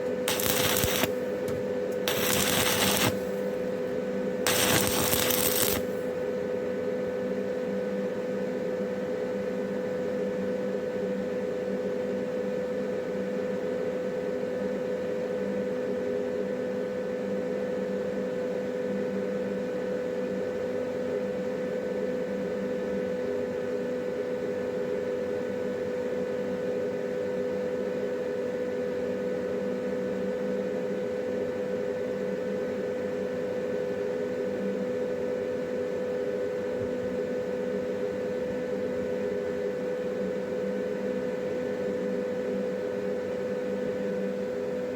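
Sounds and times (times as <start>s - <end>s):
welding machine humming: 0.0s - 3.9s, 4.5s - 6.2s
welding arc crackle: 0.3s - 3.8s, 4.5s - 6.1s.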